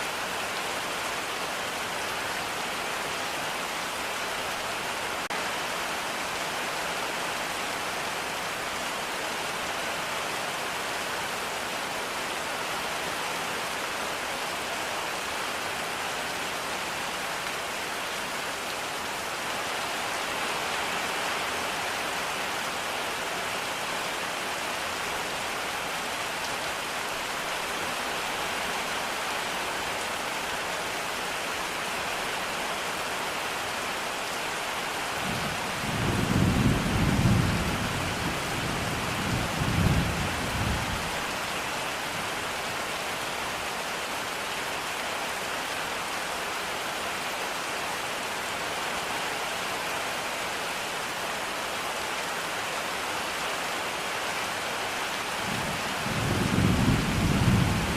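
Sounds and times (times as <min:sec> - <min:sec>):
steady rain falling: 0:00.0 - 0:57.9.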